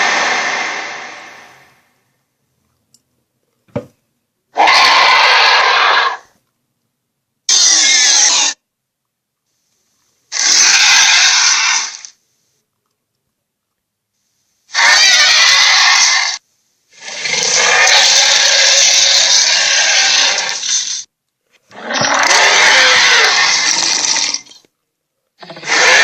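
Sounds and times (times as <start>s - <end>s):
monster roar: 0.0s - 1.7s, 4.6s - 6.2s, 10.3s - 12.1s, 14.7s - 16.4s, 17.0s - 20.8s, 21.7s - 24.6s, 25.4s - 26.0s.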